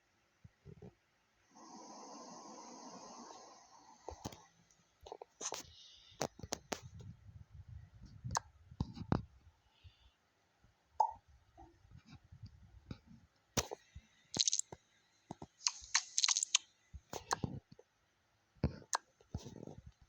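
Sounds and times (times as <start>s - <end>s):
crinkling rustles: 14.4s - 14.7s.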